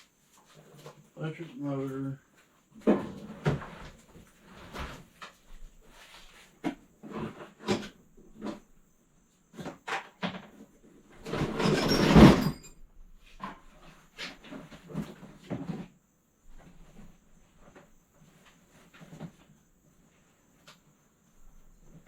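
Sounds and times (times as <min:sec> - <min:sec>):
items knocked and shifted: 0:02.8 - 0:05.7, 0:09.6 - 0:15.9.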